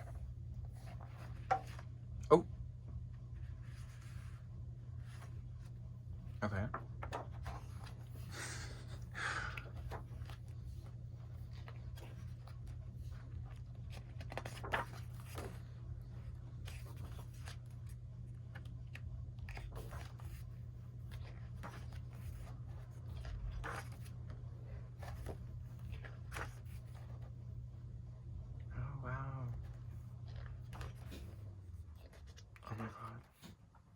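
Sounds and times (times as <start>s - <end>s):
paper pages rustling and sliding: 0.0s - 2.0s, 3.3s - 8.3s, 9.0s - 27.6s, 29.6s - 33.6s
steady low hum: 0.0s - 33.9s.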